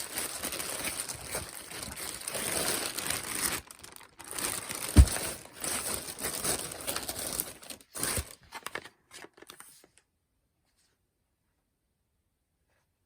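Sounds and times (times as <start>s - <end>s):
bags crinkling and rustling: 0.0s - 9.7s.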